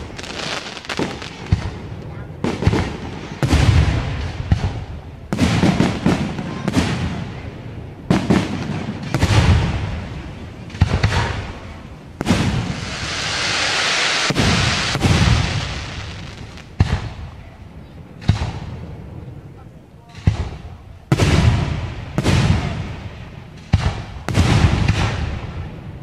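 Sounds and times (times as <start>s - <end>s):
hissing crackle: 0.0s - 2.2s, 10.7s - 17.2s
firework shells booming: 0.0s - 7.4s, 8.0s - 17.4s, 20.1s - 25.9s.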